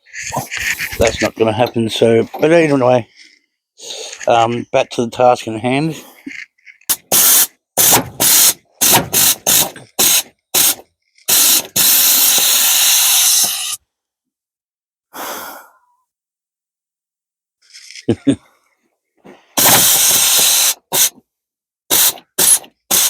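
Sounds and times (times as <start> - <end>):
air ratchet bursts: 6.9 - 13.8, 19.6 - 21.2, 21.9 - 23.0
compressed air hiss: 7.1 - 13.8, 19.5 - 21.1.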